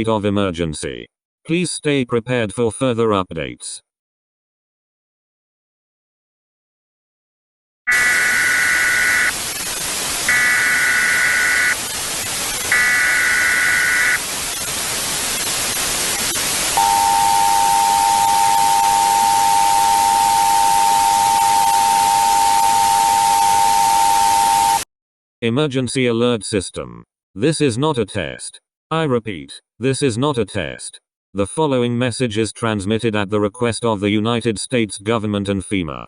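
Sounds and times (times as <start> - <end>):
static hiss: 7.9 - 20.4
shrill data bursts: 7.9 - 24.8
long steady attention tone: 10.3 - 11.8, 12.7 - 14.2, 16.8 - 24.8.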